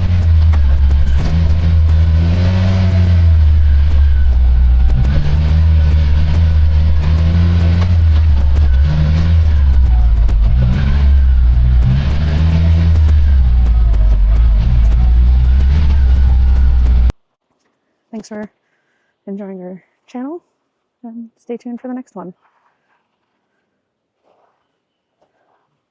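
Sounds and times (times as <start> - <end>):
vehicle engine rumbling: 0.0 - 17.2.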